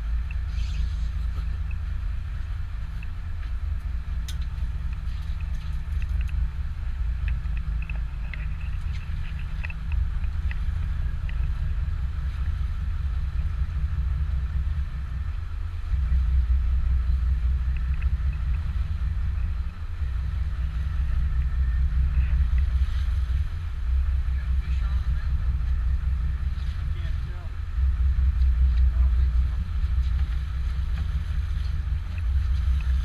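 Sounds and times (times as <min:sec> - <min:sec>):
boat engine rumble: 0:00.0 - 0:33.0
wind buffeting microphone: 0:00.0 - 0:33.0.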